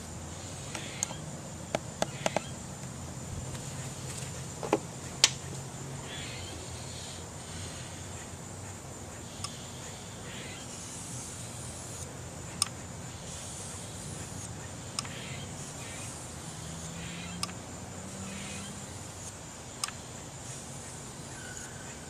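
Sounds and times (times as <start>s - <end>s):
sharp clicks: 17.2s - 17.6s, 19.8s - 20.0s.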